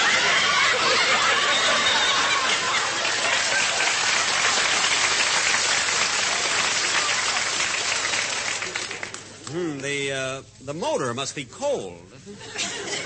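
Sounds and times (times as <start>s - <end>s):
audience laughing: 0.0s - 5.0s, 12.2s - 13.0s
many hands clapping: 2.4s - 9.9s.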